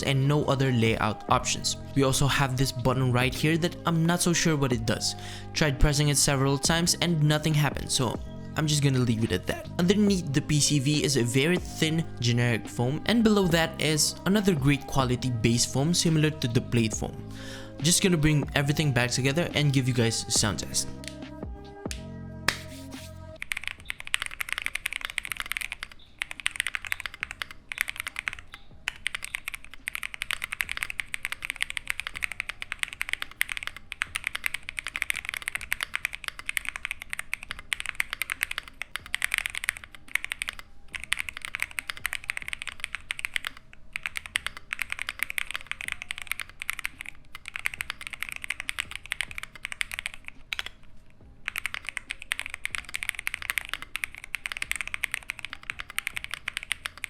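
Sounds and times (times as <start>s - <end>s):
mechanical keyboard typing: 23.4s - 50.8s, 51.4s - 57.0s.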